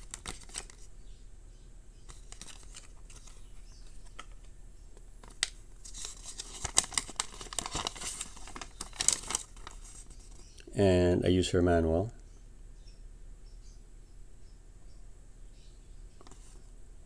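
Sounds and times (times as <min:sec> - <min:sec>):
paper packaging rustling: 0:00.0 - 0:00.9, 0:02.1 - 0:10.5, 0:16.2 - 0:16.6.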